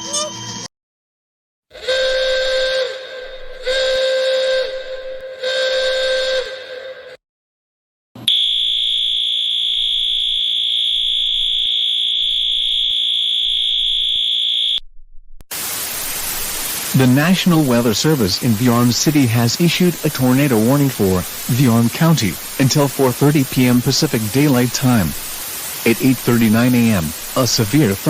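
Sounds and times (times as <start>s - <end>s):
digital header data bursts: 16.8s - 28.0s.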